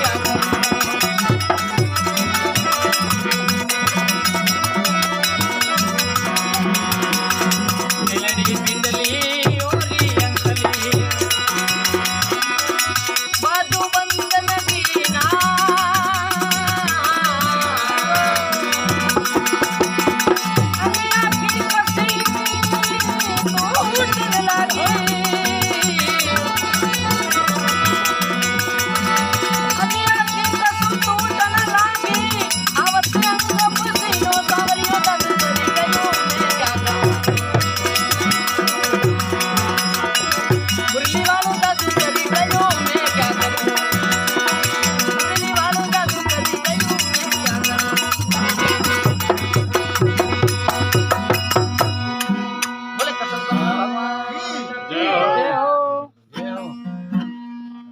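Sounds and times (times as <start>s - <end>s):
steady drum beat: 0.0s - 52.6s
rattling hand percussion: 0.0s - 53.6s.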